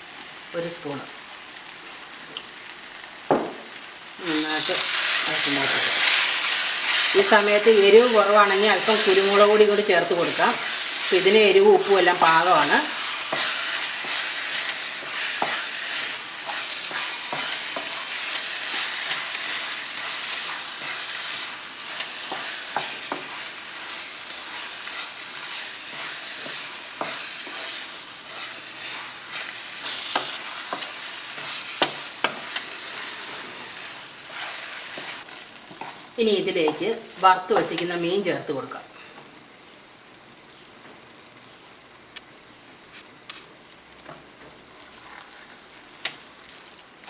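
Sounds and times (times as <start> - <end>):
masala sizzling in a pan: 0.0 - 47.0
spoon scraping against pan: 4.9 - 36.1.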